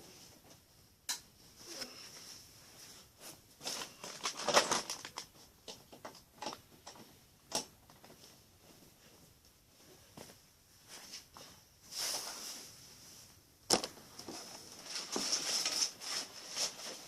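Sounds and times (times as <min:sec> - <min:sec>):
trading cards rustling: 0:03.6 - 0:05.4.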